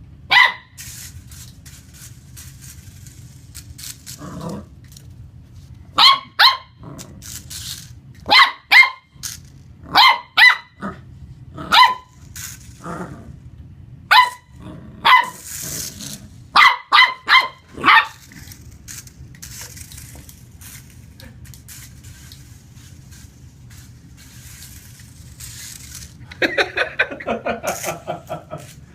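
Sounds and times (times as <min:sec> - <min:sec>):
low steady hum: 0:00.0 - 0:28.9
puppy barking: 0:00.3 - 0:00.8, 0:05.9 - 0:06.8, 0:08.3 - 0:09.1, 0:09.9 - 0:10.9, 0:11.6 - 0:12.1, 0:14.1 - 0:15.4, 0:16.5 - 0:18.2.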